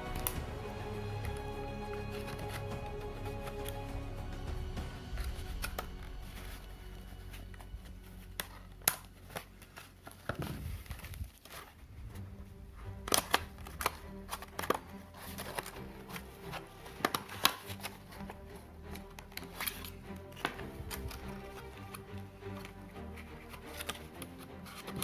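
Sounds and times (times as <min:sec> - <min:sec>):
faint background music: 0:00.0 - 0:25.0
packaging clicks and rustles: 0:05.2 - 0:12.2, 0:13.0 - 0:25.0.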